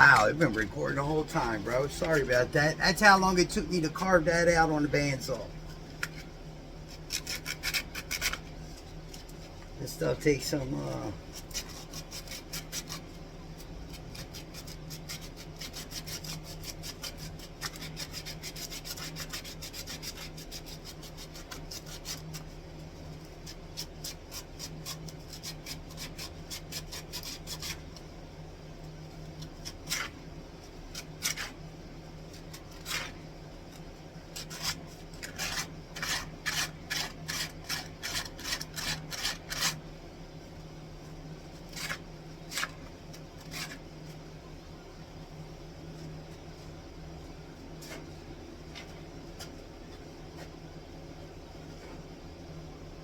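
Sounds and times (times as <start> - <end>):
steady low hum: 0.0 - 53.0
sandpaper scraping wood: 10.0 - 13.1, 13.9 - 22.5, 34.4 - 39.8.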